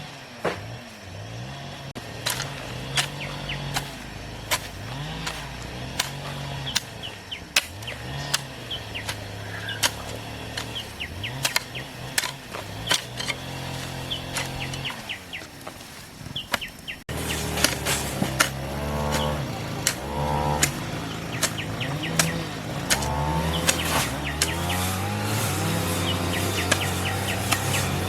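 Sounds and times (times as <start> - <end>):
small engine running: 0.0 - 15.4, 17.1 - 28.0
bird chirps: 2.8 - 5.2, 6.2 - 12.1, 13.9 - 15.6, 16.3 - 17.8, 20.4 - 28.0
sharp knocks: 16.5 - 28.0.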